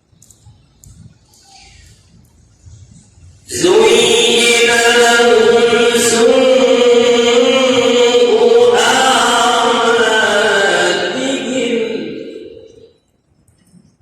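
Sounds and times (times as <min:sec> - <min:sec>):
man chanting melodically: 0:03.5 - 0:12.9.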